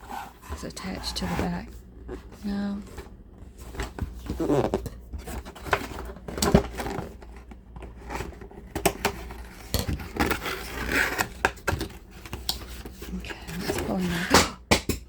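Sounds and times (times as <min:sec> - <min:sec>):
plastic and cardboard crinkling: 0:00.0 - 0:14.4
toy packaging clicks and knocks: 0:04.7 - 0:13.0.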